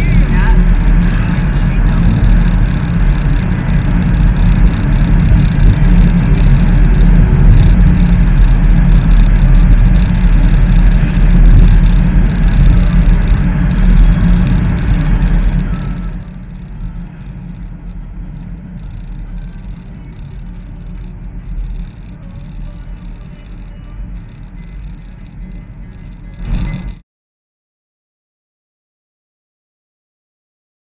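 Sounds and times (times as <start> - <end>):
loud wind noise: 0.0 - 22.0
road noise: 0.0 - 27.0.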